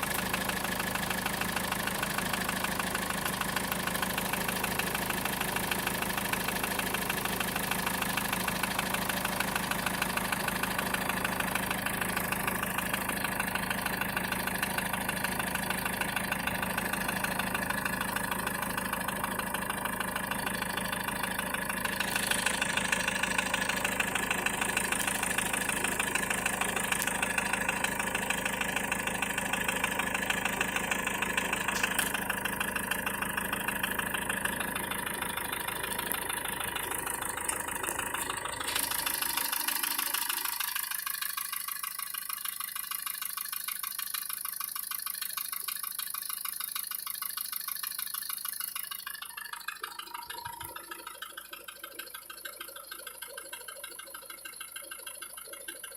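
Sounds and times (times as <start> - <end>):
car engine idling with knocking tick: 0.0 - 55.9.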